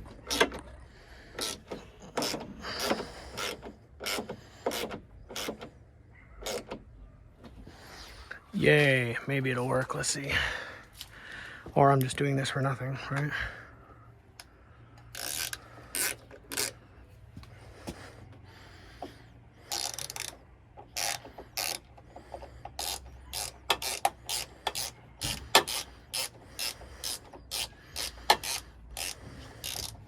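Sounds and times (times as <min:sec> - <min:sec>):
ratchet wrench clicking: 0:01.4 - 0:05.7, 0:15.0 - 0:16.8, 0:19.7 - 0:30.0.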